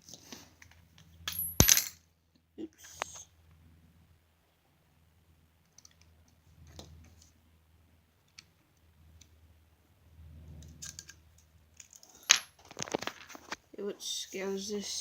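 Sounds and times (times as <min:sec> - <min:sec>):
faint clicks of small metal parts: 0:05.6 - 0:07.4, 0:10.6 - 0:13.6.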